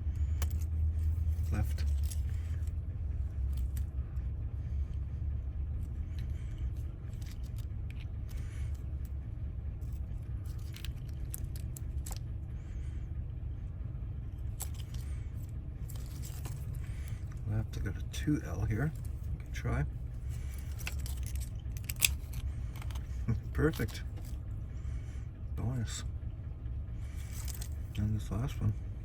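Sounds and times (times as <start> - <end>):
faint scraping of lock parts: 0.0 - 13.1, 14.2 - 25.2, 26.9 - 28.9
steady low hum: 0.0 - 29.0
light metal clicks: 20.2 - 24.5.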